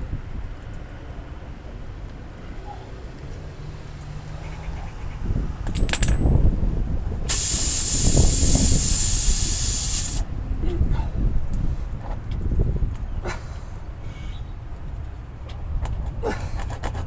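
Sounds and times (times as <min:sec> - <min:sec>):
short metallic clink: 0:05.6 - 0:06.5
compressed air hissing: 0:07.3 - 0:10.2.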